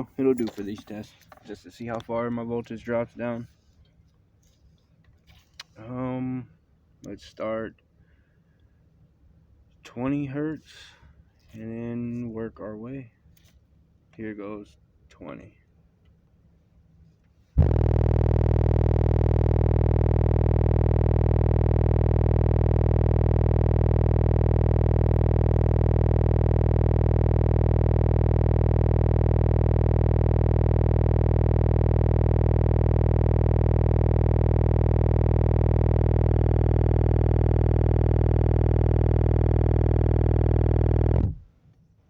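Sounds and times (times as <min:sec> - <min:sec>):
distorted subwoofer buzzing drone: 0:17.6 - 0:41.5.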